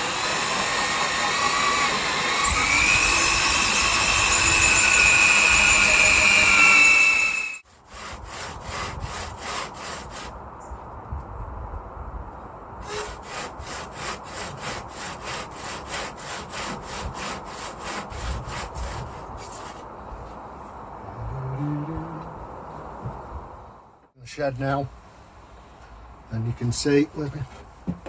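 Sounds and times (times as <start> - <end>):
power drill whining: 0.0 - 7.6
hand saw cutting board: 0.0 - 10.4, 12.8 - 19.8.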